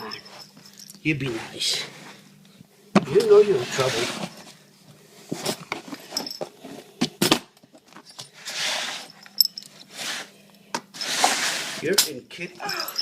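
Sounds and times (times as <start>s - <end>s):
light metallic jingle: 9.1s - 9.8s, 12.6s - 13.0s.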